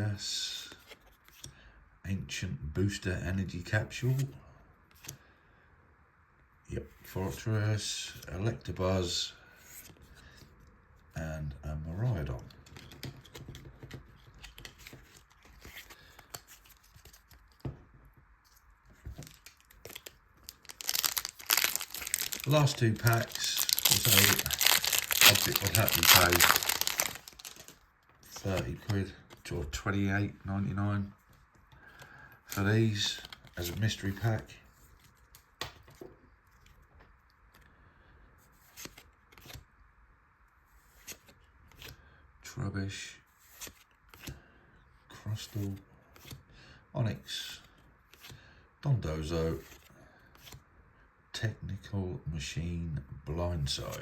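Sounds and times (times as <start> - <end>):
cards rustling: 12.4 - 17.8, 18.4 - 29.9, 31.2 - 36.8, 38.6 - 39.6, 40.8 - 42.0, 43.4 - 44.4, 49.5 - 50.6.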